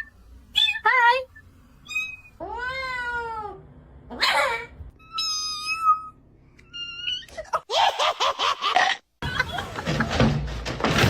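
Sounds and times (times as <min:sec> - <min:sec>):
cat meowing: 0:05.0 - 0:07.3.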